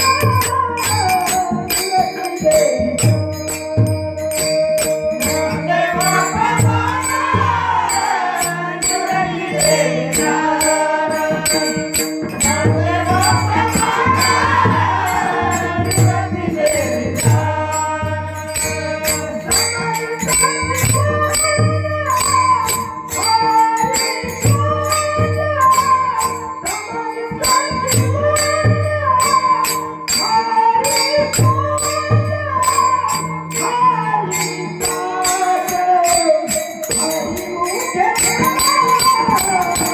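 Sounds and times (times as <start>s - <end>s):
steady drum beat: 0.0s - 26.4s
hand cymbals jingling: 0.0s - 39.9s
person singing devotional melody: 0.0s - 39.9s.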